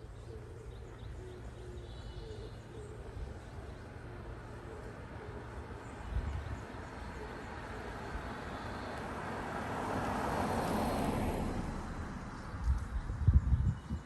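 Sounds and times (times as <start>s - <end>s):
vehicle passing: 7.2s - 13.2s.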